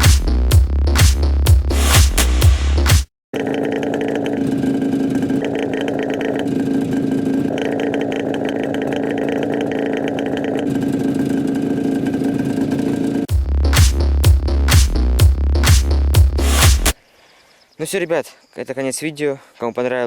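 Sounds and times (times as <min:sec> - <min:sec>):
two-stroke motorcycle engine running: 0:03.3 - 0:13.5.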